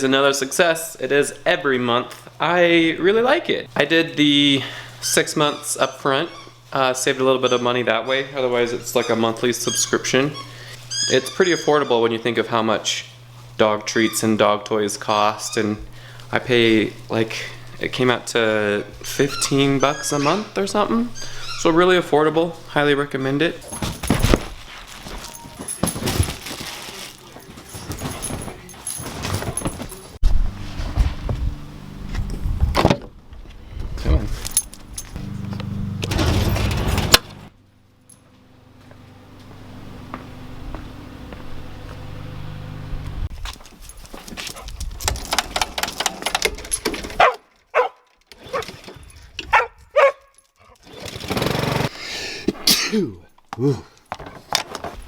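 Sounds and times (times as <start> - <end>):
low steady hum: 0.0 - 43.4
dog barking: 47.2 - 48.6, 49.5 - 50.3.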